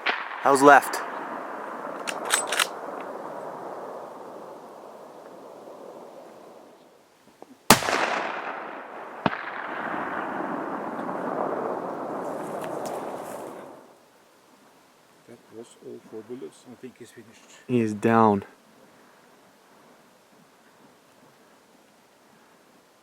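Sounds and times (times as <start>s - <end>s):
rifle shot echoing: 0.0s - 6.6s, 7.7s - 13.9s
weaker sharp crack: 0.0s - 6.8s, 7.7s - 13.9s.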